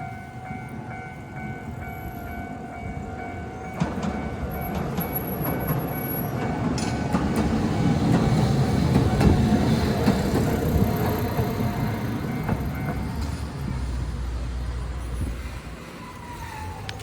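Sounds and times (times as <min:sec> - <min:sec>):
level crossing warning bell: 0:00.0 - 0:07.2, 0:10.6 - 0:13.5
streetcar running: 0:00.0 - 0:17.0
wheels clicking over rail joints: 0:03.8 - 0:13.8.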